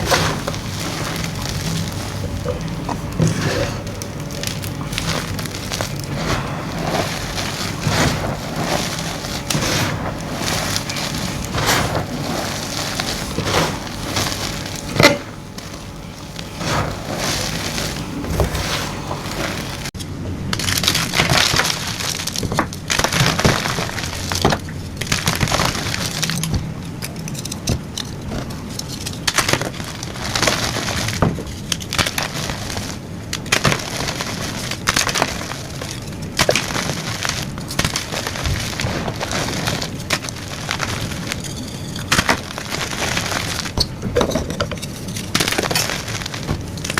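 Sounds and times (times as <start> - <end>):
chalk crunching and snapping: 0.0 - 19.9.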